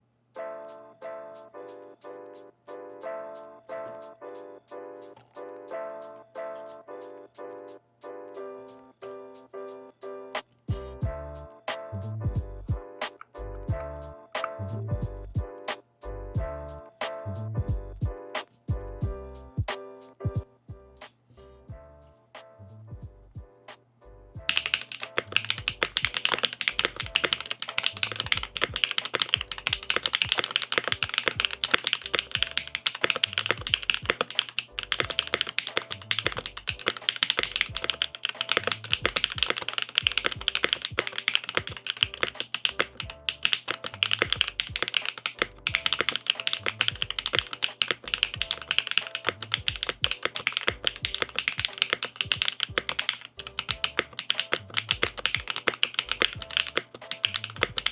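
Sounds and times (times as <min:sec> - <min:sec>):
mechanical keyboard typing: 0:24.5 - 0:57.9.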